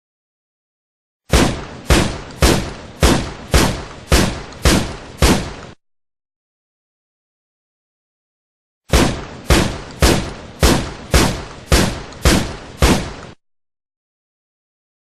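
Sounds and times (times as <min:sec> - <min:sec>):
shotgun shots: 0:01.3 - 0:05.8, 0:08.9 - 0:13.4.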